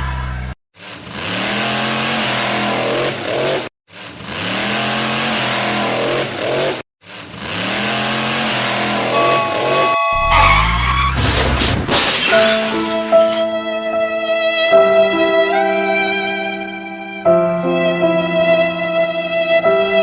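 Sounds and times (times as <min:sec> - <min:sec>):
vehicle engine revving: 0:00.8 - 0:11.6.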